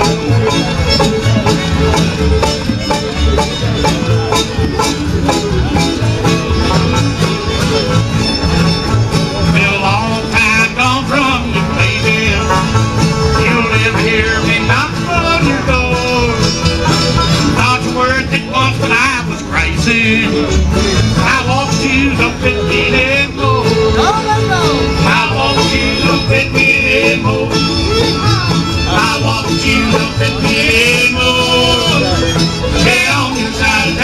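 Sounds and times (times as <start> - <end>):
banjo: 0.0 - 34.0
bass line: 0.0 - 34.0
fiddle: 0.0 - 34.0
guitar: 0.0 - 34.0
wavering lead melody: 0.0 - 34.0.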